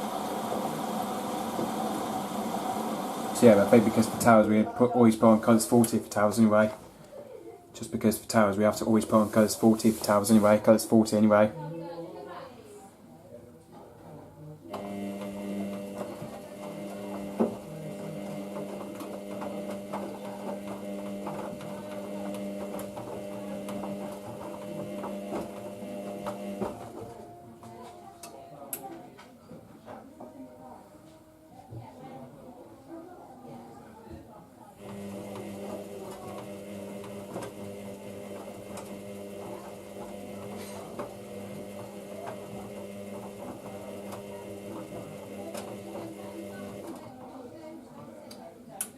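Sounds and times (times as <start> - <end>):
washing machine motor hum: 0.0 - 7.0, 14.7 - 27.6, 34.8 - 47.3.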